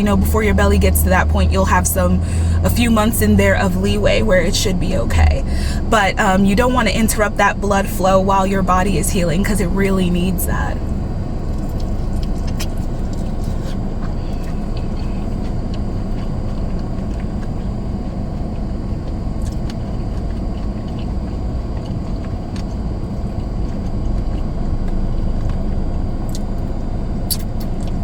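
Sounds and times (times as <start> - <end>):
person eating clicks: 11.5 - 28.0.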